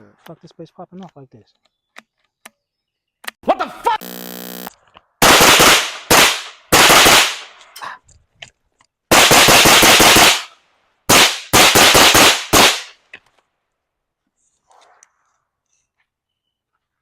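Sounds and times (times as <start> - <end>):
rapid gunfire: 5.2 - 7.5, 9.1 - 10.5, 11.1 - 12.9.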